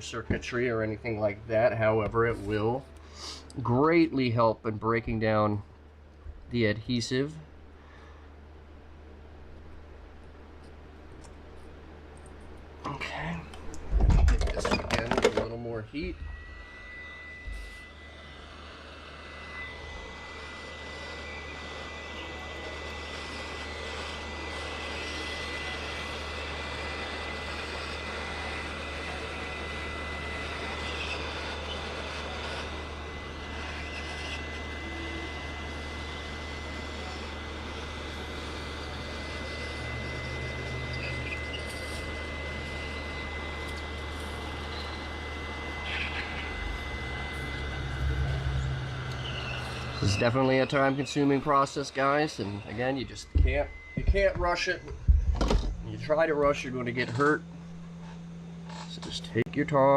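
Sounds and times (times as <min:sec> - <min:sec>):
heat gun blowing: 0:16.2 - 0:54.1.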